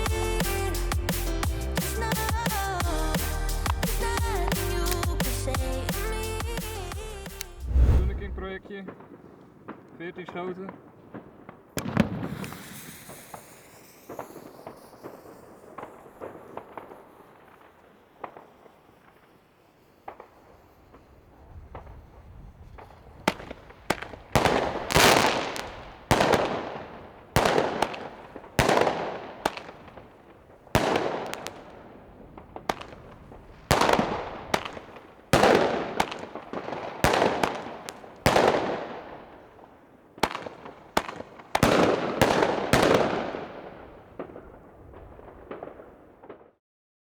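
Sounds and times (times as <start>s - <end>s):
sharp firecracker cracks: 6.0s - 8.4s, 9.0s - 21.1s, 22.8s - 44.6s
firecracker bangs with echo: 7.4s - 19.4s, 22.8s - 46.5s.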